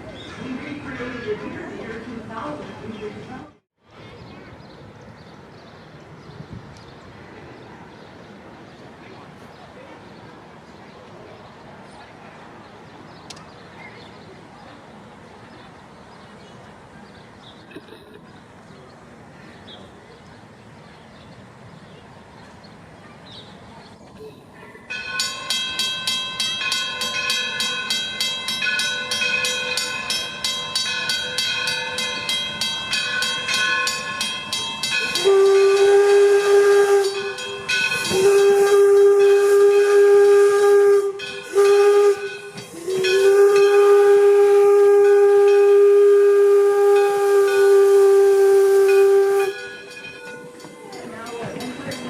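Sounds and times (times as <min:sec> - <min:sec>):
steam locomotive whistle blasts: 0:34.9 - 0:50.1.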